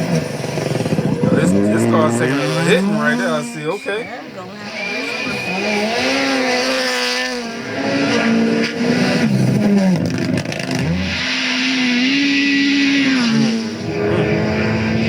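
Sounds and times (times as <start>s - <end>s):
rally car engine at high revs: 0.0s - 15.0s.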